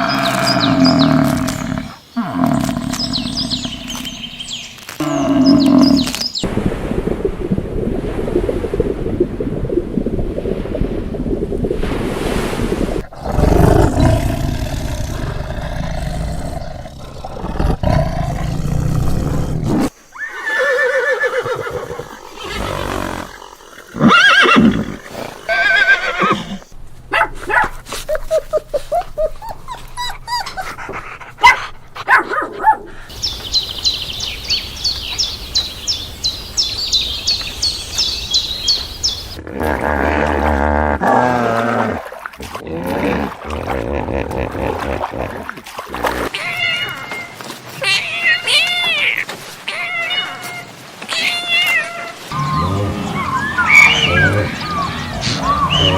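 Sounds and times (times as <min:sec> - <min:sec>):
pitched animal calls: 0:46.3 - 0:55.9
rough low animal call: 0:52.2 - 0:55.9.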